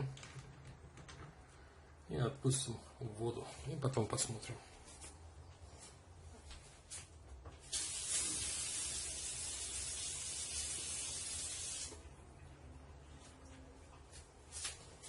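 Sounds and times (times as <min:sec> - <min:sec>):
hot metal sizzling in water: 0:07.7 - 0:11.9.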